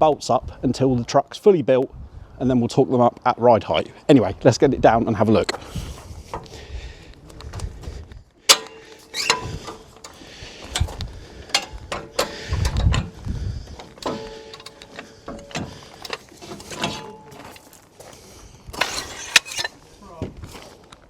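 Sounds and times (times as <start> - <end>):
short squeaks: 8.5 - 10.2, 14.0 - 17.6, 18.8 - 19.7
metal clanks and knocks: 8.5 - 13.2, 13.8 - 17.7, 18.7 - 19.8.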